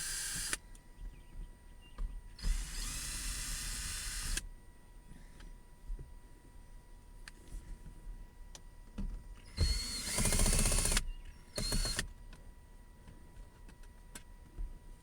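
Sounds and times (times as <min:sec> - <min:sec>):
cordless drill spinning out screws: 0:00.0 - 0:00.6, 0:02.4 - 0:04.4, 0:09.6 - 0:11.0, 0:11.6 - 0:12.0.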